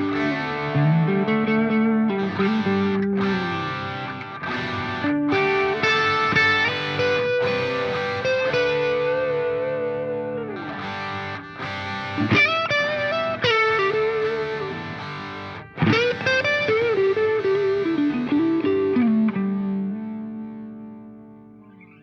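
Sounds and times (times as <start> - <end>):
guitar melody with effects: 0.0 - 22.0.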